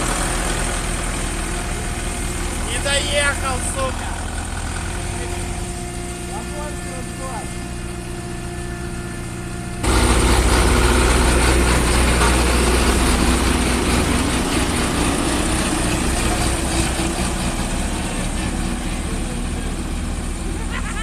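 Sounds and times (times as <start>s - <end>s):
diesel road roller engine rumbling: 0.0s - 21.0s.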